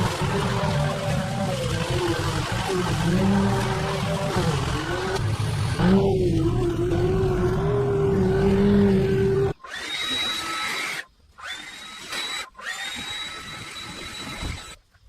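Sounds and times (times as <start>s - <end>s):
power tool low hum: 0.0s - 14.8s
power tool high whine: 3.0s - 14.8s.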